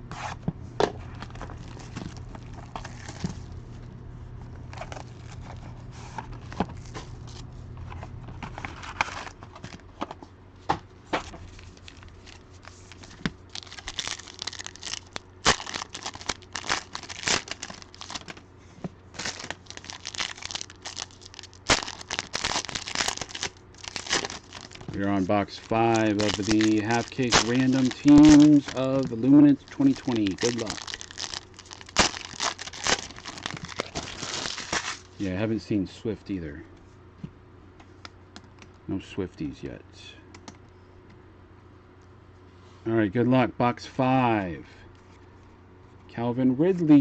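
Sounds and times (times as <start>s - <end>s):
low steady hum: 0.0s - 47.0s
plastic wrappers crinkling and tearing: 1.1s - 3.5s, 11.4s - 18.4s, 19.1s - 35.1s.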